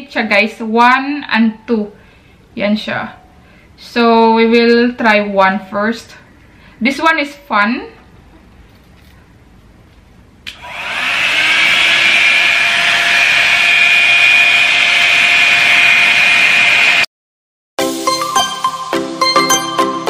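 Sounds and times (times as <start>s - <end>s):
hot air brush motor whine: 10.5s - 17.1s.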